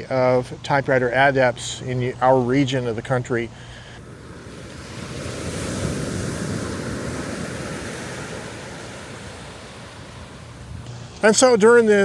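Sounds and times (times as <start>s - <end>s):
ocean surf washing onto beach: 4.0s - 10.9s
wind on microphone: 4.0s - 10.9s.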